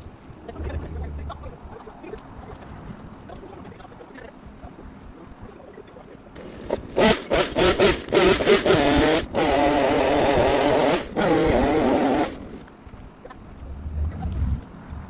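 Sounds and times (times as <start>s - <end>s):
chainsaw engine revving: 6.4s - 12.6s.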